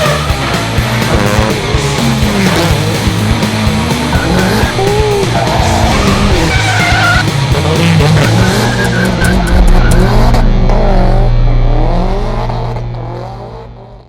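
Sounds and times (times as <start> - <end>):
car engine revving: 0.0 - 14.0
tyre squeal: 4.1 - 7.3, 8.2 - 10.1.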